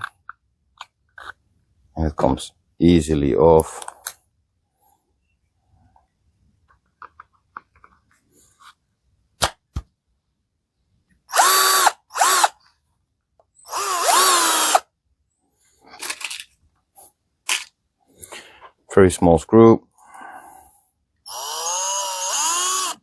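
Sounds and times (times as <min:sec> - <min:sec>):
cordless drill motor whirring: 0:11.3 - 0:12.6, 0:13.6 - 0:14.9, 0:21.3 - 0:23.0.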